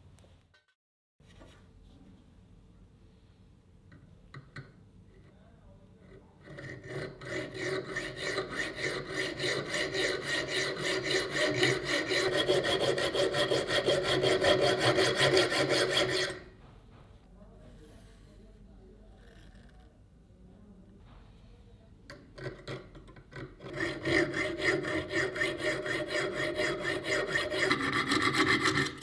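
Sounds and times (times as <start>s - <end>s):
file scraping a steel blade: 6.0s - 16.5s, 23.4s - 29.0s.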